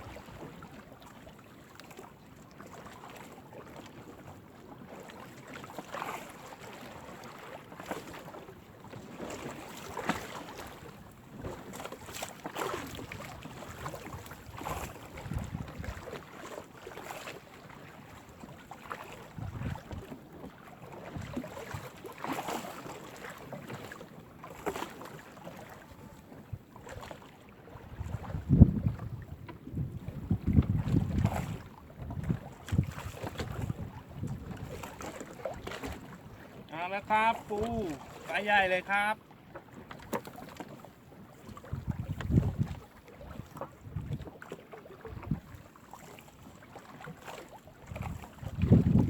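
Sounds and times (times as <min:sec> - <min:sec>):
wind buffeting microphone: 0:14.5 - 0:16.0, 0:19.4 - 0:20.0, 0:27.9 - 0:34.8, 0:41.7 - 0:42.8, 0:43.4 - 0:44.3, 0:47.9 - 0:49.0
wet splashes and knocks: 0:39.9 - 0:40.8.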